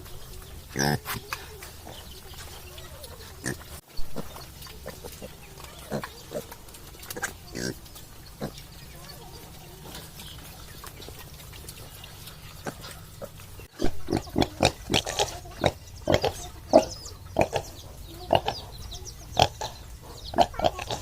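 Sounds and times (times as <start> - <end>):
pigs grunting and squealing: 0.0 - 21.0.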